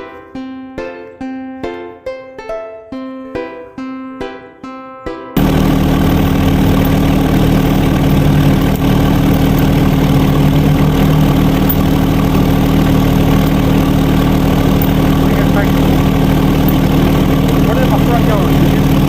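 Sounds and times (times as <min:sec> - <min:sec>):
engine humming steadily: 0:05.4 - 0:19.0.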